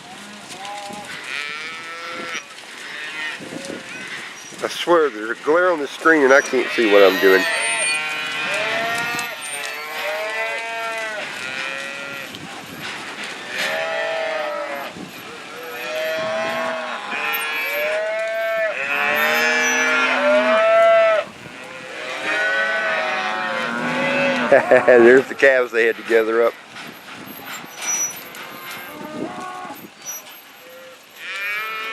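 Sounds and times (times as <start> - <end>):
cattle mooing: 6.2 - 12.3, 13.5 - 26.3, 28.4 - 29.8.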